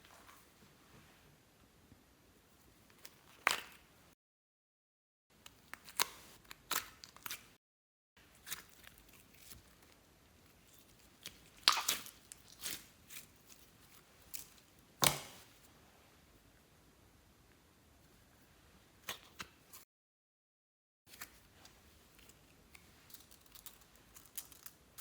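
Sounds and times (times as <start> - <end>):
slime popping and crackling: 11.2 - 13.2.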